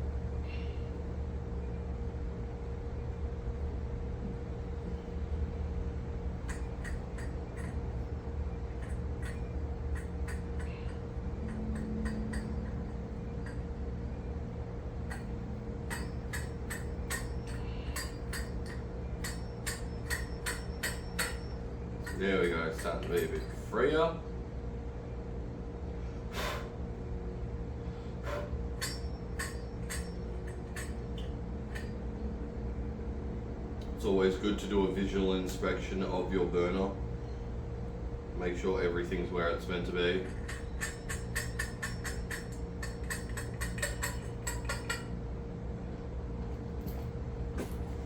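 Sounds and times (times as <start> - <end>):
steady low hum: 0.0 - 48.0
metallic clicks and clinks: 40.2 - 45.1.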